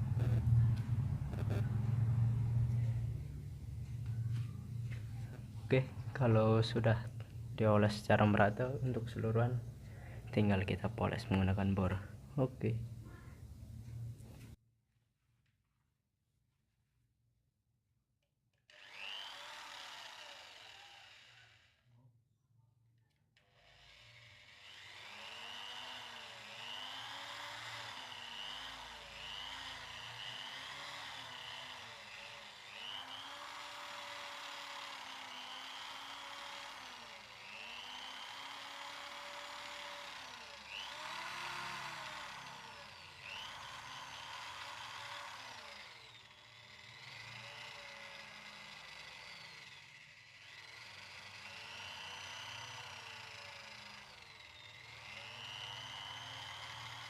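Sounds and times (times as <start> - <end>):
electric drill motor whine: 18.7 - 21.8, 23.4 - 57.0.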